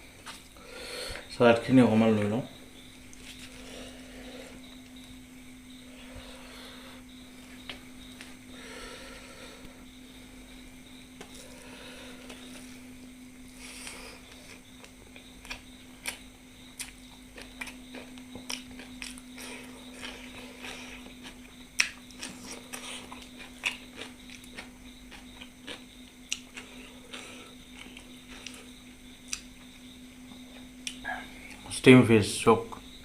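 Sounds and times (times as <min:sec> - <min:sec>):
low steady hum: 0:00.0 - 0:33.0
person chewing food: 0:13.4 - 0:29.7.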